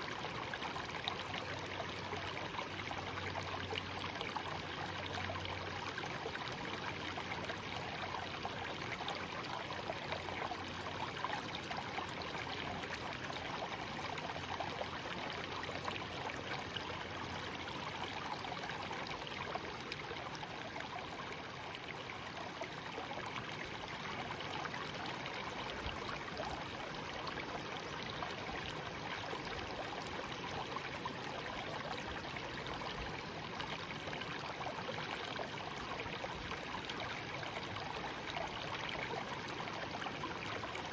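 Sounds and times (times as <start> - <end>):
stream babbling over stones: 0.0 - 40.9.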